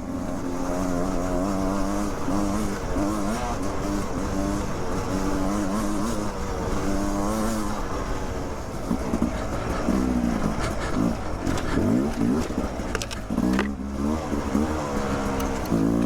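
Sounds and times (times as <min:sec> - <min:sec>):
dirt bike engine revving: 0:00.0 - 0:16.0.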